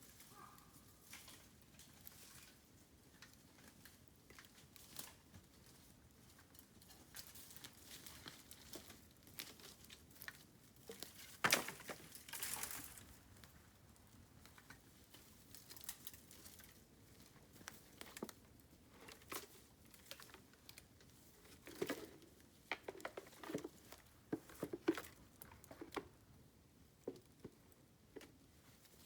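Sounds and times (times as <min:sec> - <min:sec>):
bamboo fire crackling: 0:01.0 - 0:23.2
dry leaves rustling: 0:10.8 - 0:17.8.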